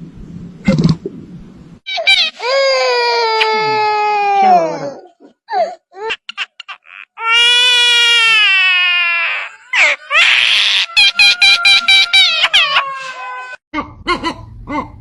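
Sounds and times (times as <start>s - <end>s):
bird wailing cries: 7.5s - 13.6s.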